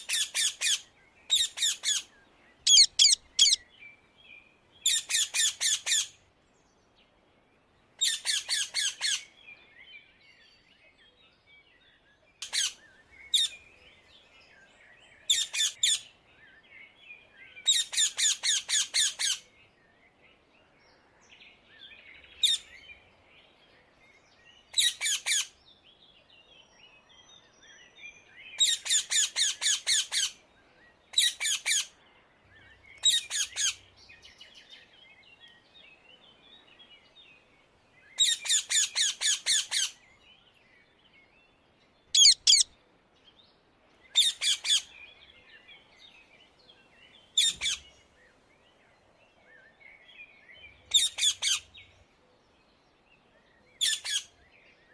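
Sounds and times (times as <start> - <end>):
faint bird chirping: 0.0 - 54.9
parakeets screeching: 2.7 - 3.6, 42.2 - 42.7.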